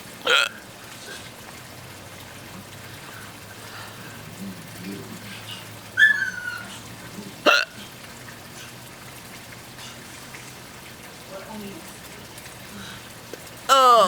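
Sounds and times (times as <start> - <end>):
person hiccuping: 0.2 - 0.6, 7.4 - 7.8, 13.7 - 14.0.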